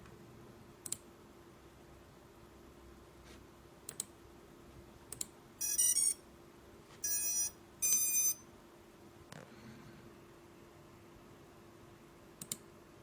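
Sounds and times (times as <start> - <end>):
faint steady hum: 0.0 - 13.0
electronic motor beeping tones: 5.6 - 6.2, 7.0 - 8.4.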